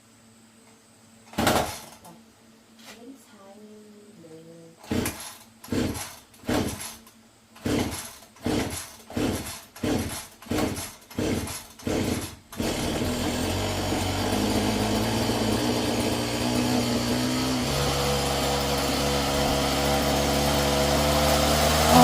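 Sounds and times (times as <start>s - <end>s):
small motor running: 7.6s - 22.0s.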